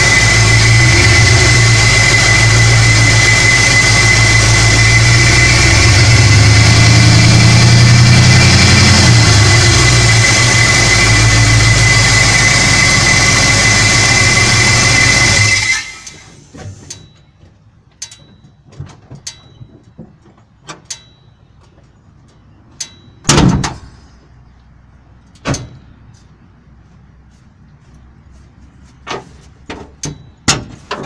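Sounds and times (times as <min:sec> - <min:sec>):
pickup truck running with high tone: 0:00.0 - 0:17.4.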